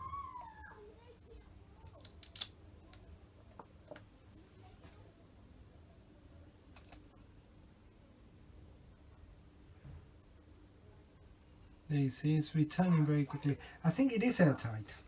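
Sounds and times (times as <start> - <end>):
small metal parts clicking: 1.8 - 4.1, 6.7 - 7.2.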